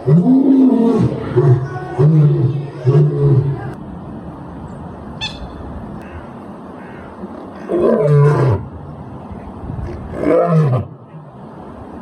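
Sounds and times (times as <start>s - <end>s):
lion roaring: 0.0s - 3.8s.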